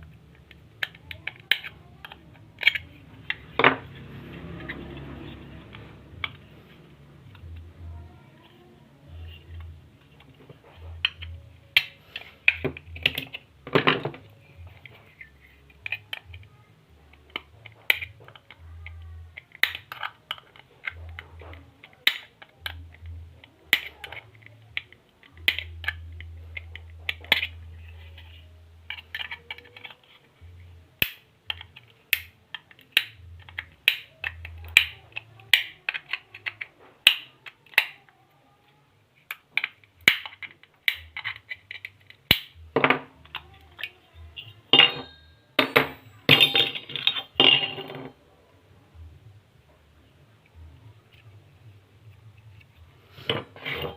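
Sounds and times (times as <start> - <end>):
faint low hum: 0.0 - 53.9
clicks and taps of hand tools: 23.7 - 27.6, 31.0 - 38.0, 39.3 - 43.9.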